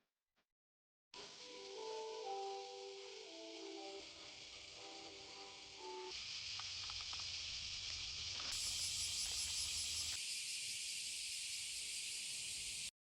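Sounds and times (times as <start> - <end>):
cicadas shrilling: 1.2 - 12.9
pulsing insect call: 1.2 - 12.9.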